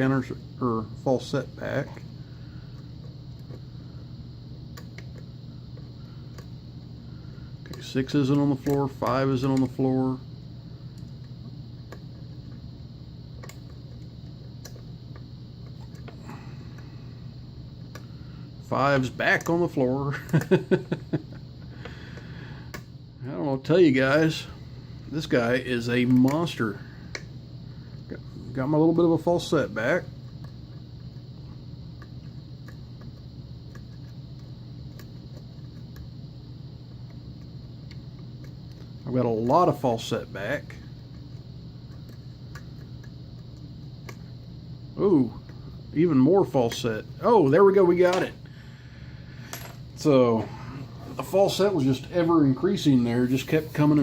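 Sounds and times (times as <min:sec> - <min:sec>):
steady low hum: 0:00.0 - 0:54.0
small ticks: 0:13.3 - 0:17.0, 0:30.2 - 0:39.1, 0:41.0 - 0:44.6.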